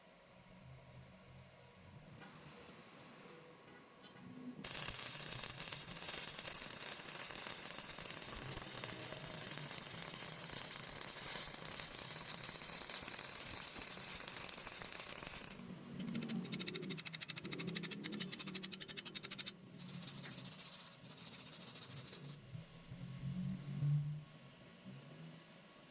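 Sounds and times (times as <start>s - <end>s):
welding arc crackling and sizzling: 4.6s - 15.7s, 19.8s - 22.4s.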